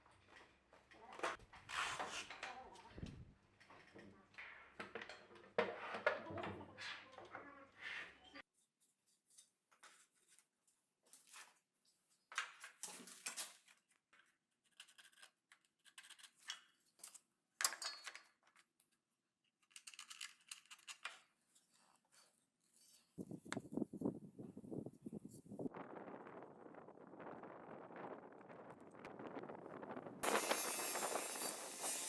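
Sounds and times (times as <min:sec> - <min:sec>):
scraping and rustling on wood: 0:01.2 - 0:02.6.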